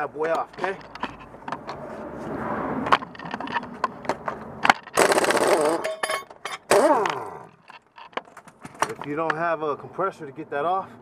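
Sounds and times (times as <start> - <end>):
tool clicks: 2.9 - 9.1
air impact gun hammering: 4.9 - 5.8.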